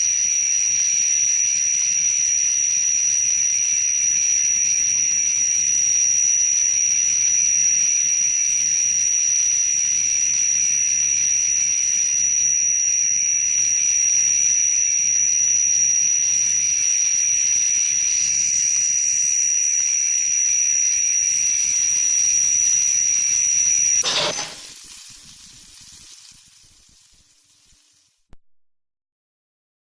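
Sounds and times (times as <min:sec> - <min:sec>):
high-pitched laser whine: 0:20.0 - 0:28.2
hiss: 0:21.4 - 0:28.3
short burst: 0:24.0 - 0:24.8.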